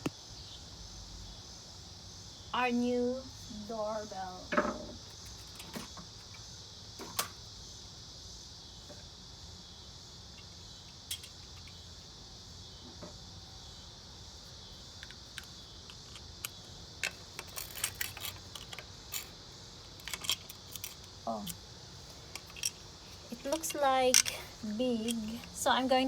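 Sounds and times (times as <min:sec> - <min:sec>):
high-pitched insect chorus: 0:00.0 - 0:26.0
small parts clicking: 0:10.4 - 0:11.8, 0:15.0 - 0:25.7.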